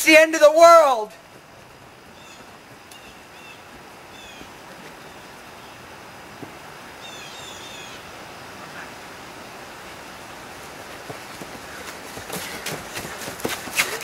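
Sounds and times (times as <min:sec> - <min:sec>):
steady outdoor hiss: 0:00.0 - 0:14.0
falling bird chirps: 0:02.2 - 0:05.8.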